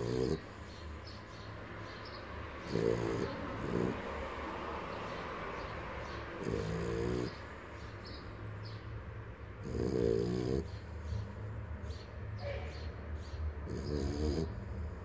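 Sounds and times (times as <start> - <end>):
small dog snoring: 0.0 - 0.5, 2.6 - 4.1, 6.4 - 7.4, 9.6 - 10.8, 13.6 - 14.6.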